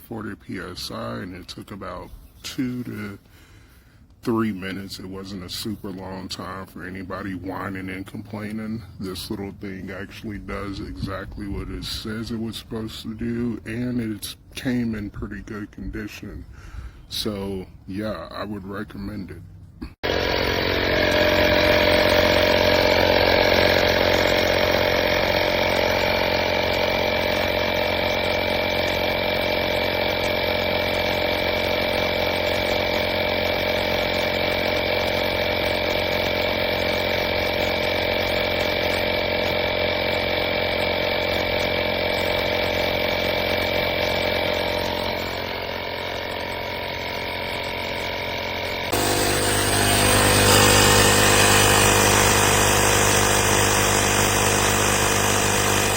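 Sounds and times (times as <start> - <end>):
tire inflator compressor buzzing: 20.0 - 55.9.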